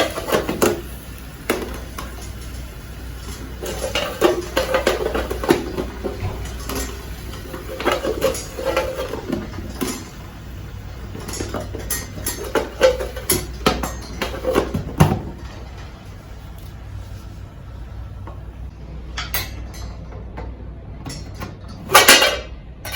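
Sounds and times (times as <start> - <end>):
steady low hum: 0.0 - 22.9
metal utensils knocking on mess tin: 3.2 - 10.2, 11.0 - 15.3.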